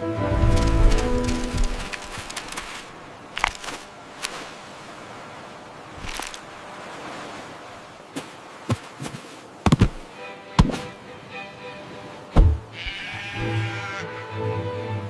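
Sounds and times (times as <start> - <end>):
sharp knocks or pops: 9.6 - 10.0.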